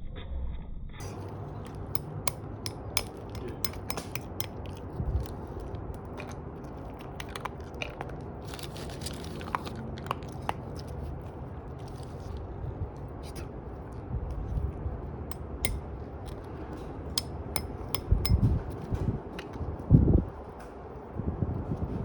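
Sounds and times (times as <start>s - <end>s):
sharp clicks and crunches: 1.0s - 19.8s.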